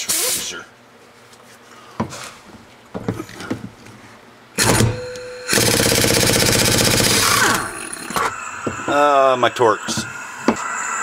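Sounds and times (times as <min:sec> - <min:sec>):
impact wrench hammering: 0:04.6 - 0:07.6.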